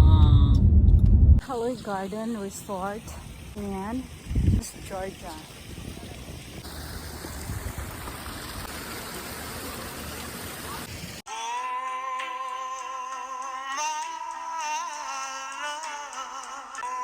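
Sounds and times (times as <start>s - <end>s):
running water: 1.5s - 11.3s.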